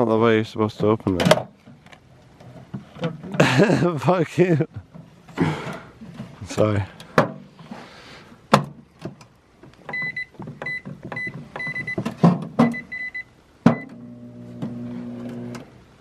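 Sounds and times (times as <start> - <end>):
microwave keypad beeping: 9.9 - 12.0, 12.6 - 14.0
microwave oven humming: 13.8 - 15.7.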